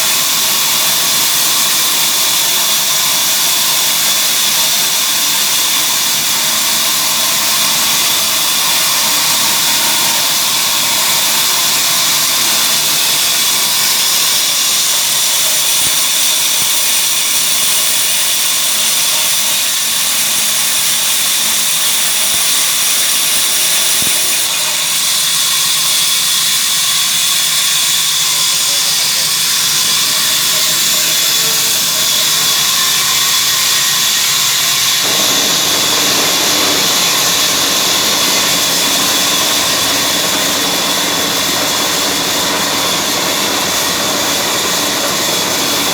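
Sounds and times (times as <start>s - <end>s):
engine-driven wood saw running: 0.0s - 45.9s.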